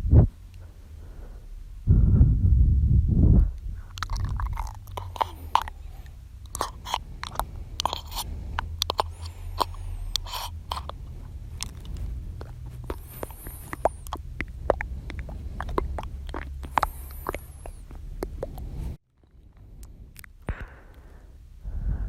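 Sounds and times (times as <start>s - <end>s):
steady low hum: 0.0s - 22.0s
wet mouth clicks and smacks: 3.8s - 21.0s.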